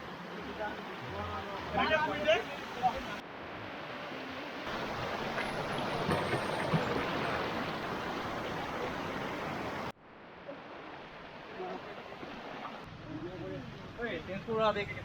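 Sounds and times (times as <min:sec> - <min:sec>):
waterfall rushing: 0:00.2 - 0:09.9.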